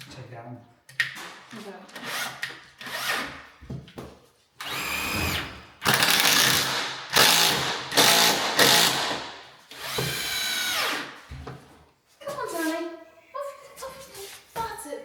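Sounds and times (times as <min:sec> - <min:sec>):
drill driving screws: 0:01.9 - 0:03.5, 0:04.6 - 0:11.2
power drill motor whine: 0:04.6 - 0:05.4, 0:09.7 - 0:11.0.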